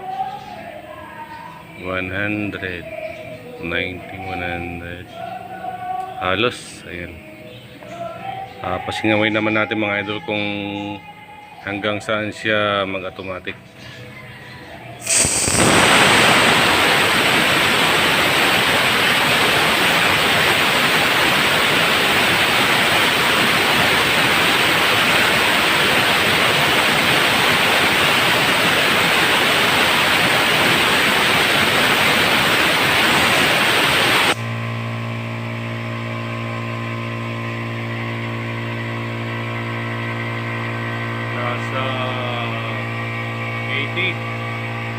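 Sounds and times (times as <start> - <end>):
compressed air hissing: 15.0 - 34.4
compressor motor humming: 15.0 - 44.9.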